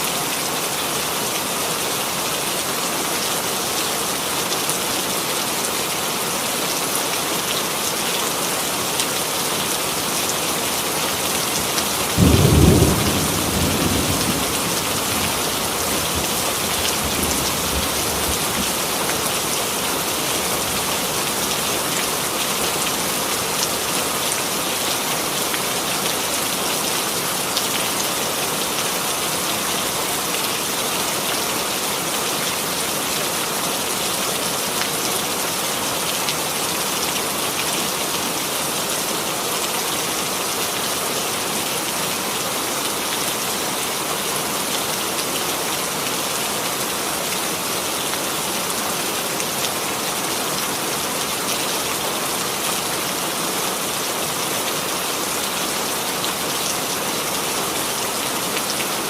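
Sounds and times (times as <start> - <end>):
steady rainfall: 0.0 - 59.0
thunder clap rumbling: 12.2 - 15.7.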